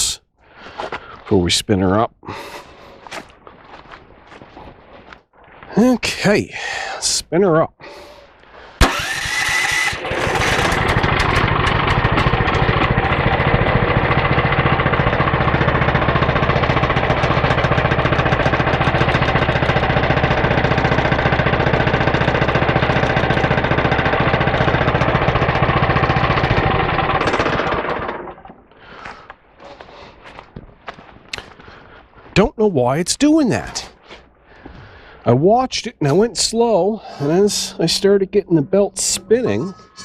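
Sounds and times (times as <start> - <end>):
gasoline engine running: 8.8 - 28.7, 36.1 - 40.0.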